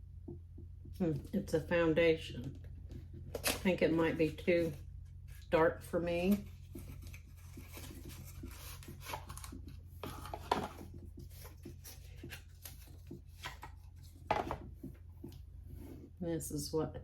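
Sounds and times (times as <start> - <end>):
steady low hum: 0.0 - 17.0
packaging rustling and rubbing: 6.3 - 14.5.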